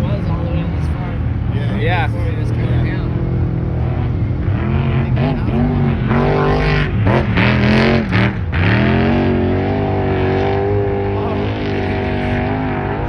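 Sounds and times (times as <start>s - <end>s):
truck engines revving high: 0.0s - 13.0s.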